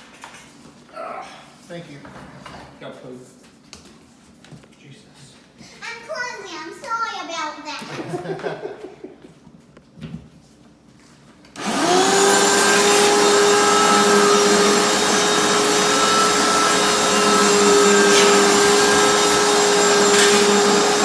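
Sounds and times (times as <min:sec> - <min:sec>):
vacuum cleaner motor whining: 0:11.5 - 0:21.0.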